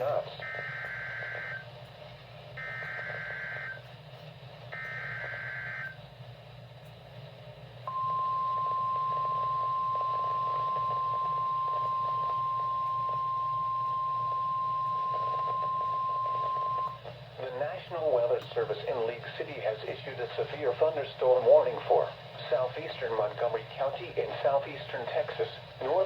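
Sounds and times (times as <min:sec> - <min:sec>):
radio hiss: 0:00.0 - 0:01.6, 0:15.0 - 0:26.0
steady attention tone: 0:04.7 - 0:06.0, 0:07.9 - 0:17.1.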